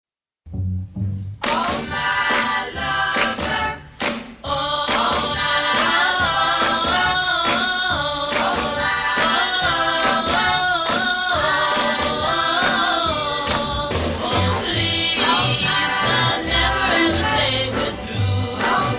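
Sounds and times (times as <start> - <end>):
steady percussion beat: 1.4 - 18.9
women singing in harmony: 1.4 - 18.9.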